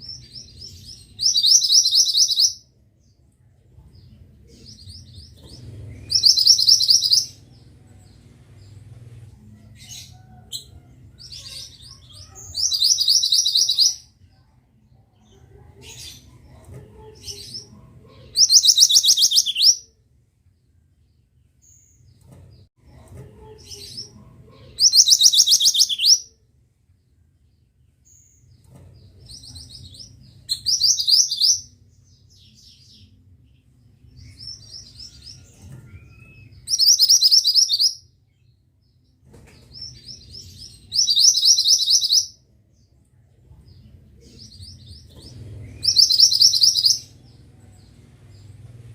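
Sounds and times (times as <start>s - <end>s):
low steady hum: 46.8s - 48.9s.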